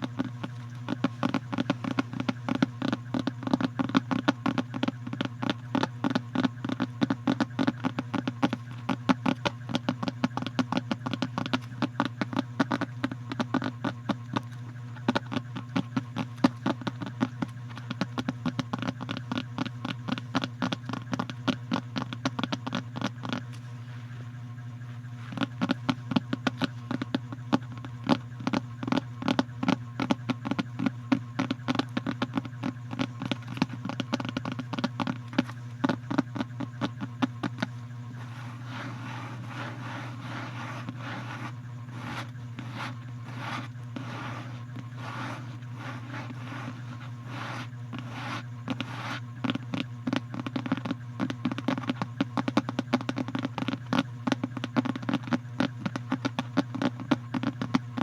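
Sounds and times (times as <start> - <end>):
rapid clicks and taps: 0.0 - 58.0
steady low hum: 0.0 - 58.0.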